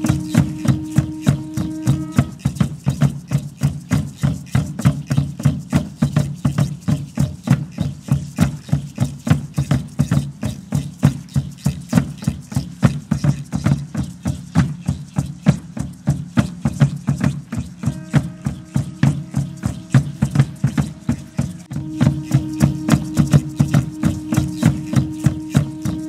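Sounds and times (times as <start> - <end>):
low sustained tone: 0.0 - 2.6, 17.8 - 26.0
percussive beat: 0.0 - 26.0.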